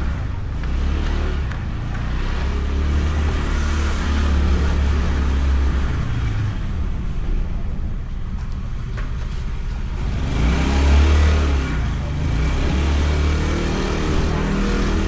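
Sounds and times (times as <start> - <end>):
scooter engine running: 0.0 - 7.9, 9.0 - 15.0
wind and road noise: 0.0 - 15.0.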